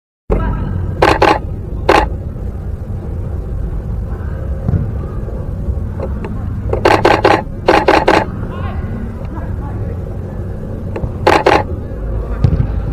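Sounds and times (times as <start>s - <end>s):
low rumble: 0.3s - 12.9s
camera shutter firing: 1.0s - 2.1s, 6.8s - 8.3s, 11.2s - 11.7s.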